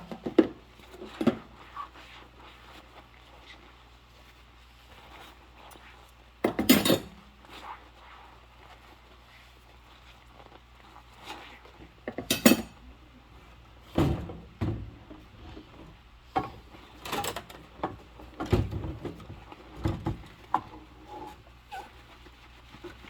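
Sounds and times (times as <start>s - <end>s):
dishes and cutlery clinking: 6.5s - 7.2s, 12.1s - 12.8s.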